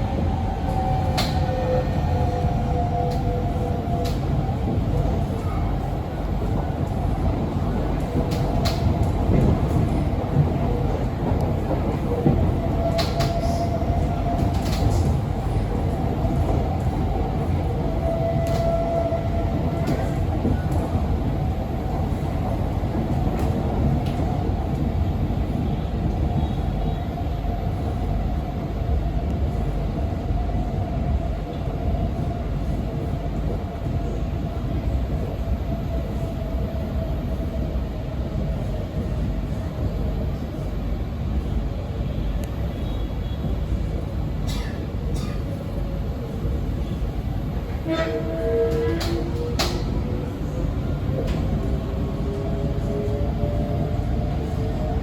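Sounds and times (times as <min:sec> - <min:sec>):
train wheels rumbling on rail: 0:00.0 - 0:55.0.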